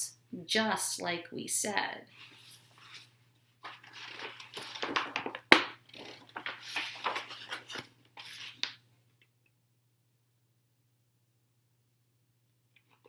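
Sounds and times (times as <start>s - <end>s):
paper pages rustling: 2.2s - 8.8s.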